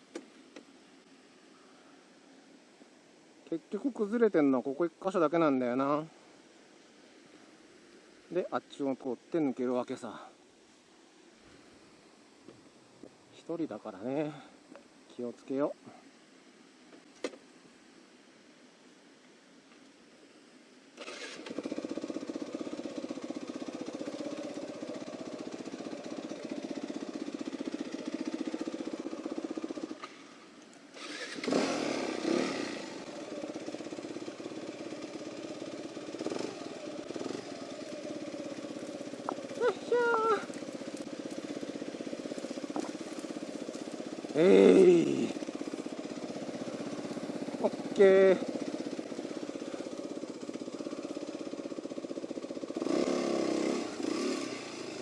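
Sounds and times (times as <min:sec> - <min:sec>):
motorcycle engine revving: 0:21.0 - 0:30.3, 0:30.9 - 0:55.0.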